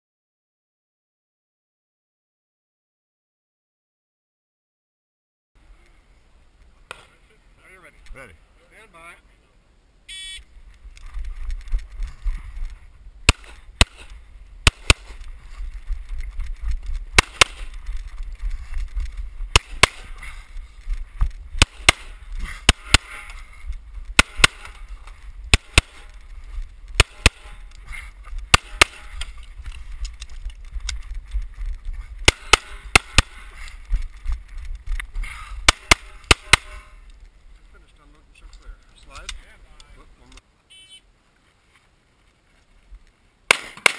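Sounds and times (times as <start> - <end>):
pistol shots: 13.3 - 15.2, 17.2 - 17.7, 19.5 - 20.2, 21.6 - 23.3, 24.2 - 24.8, 25.5 - 26.2, 27.0 - 27.6, 28.5 - 29.3, 32.2 - 33.5, 35.6 - 36.9, 43.5 - 43.9.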